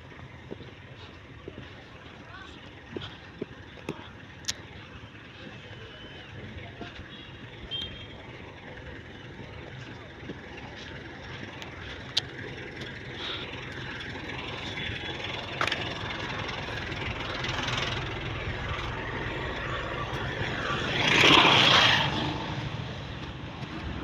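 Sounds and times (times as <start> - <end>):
low engine-like hum: 0.0 - 24.0.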